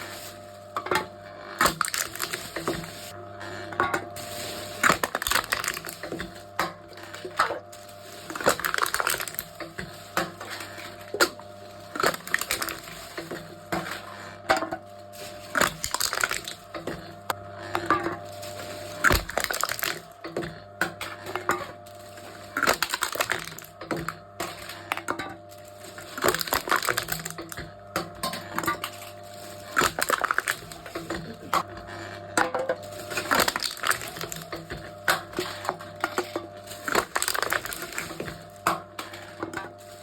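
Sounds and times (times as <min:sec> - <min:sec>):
steady machine hum: 0:00.0 - 0:40.0
metal cans crunching: 0:00.8 - 0:03.2, 0:04.0 - 0:40.0.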